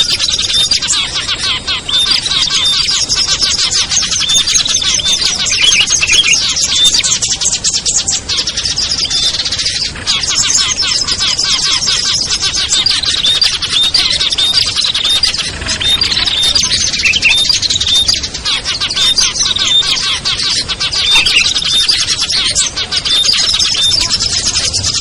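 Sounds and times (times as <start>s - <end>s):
songbirds chirping chorus: 0.0s - 25.0s.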